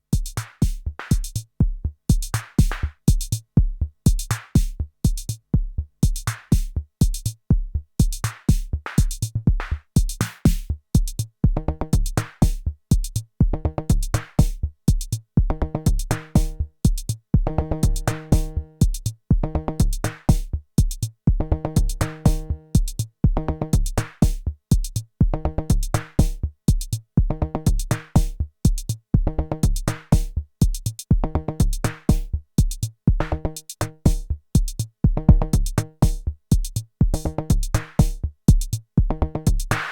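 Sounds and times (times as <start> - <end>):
deep kick drum: 0.0 - 39.9
fast hi-hat ticks: 0.2 - 1.4, 17.8 - 19.1, 19.8 - 21.1, 21.8 - 23.1, 25.7 - 27.0, 27.7 - 29.0, 29.6 - 38.9, 39.5 - 39.9.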